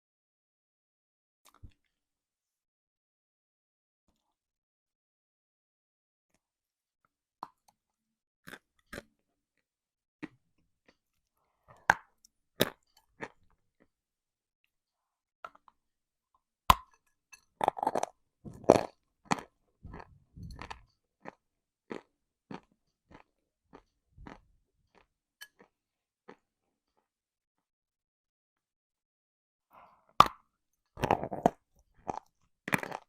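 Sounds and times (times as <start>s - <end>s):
crunchy chewing: 17.6s - 26.4s, 31.0s - 33.0s.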